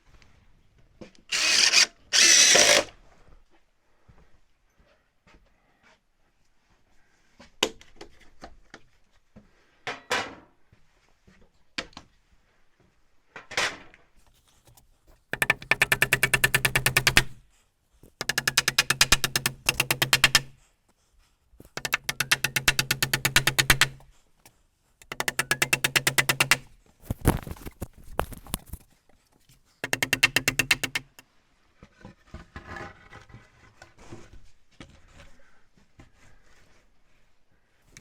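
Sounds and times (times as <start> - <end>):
impact driver hammering: 25.0 - 26.7, 29.8 - 31.2
wood knocking on wood: 29.8 - 31.2.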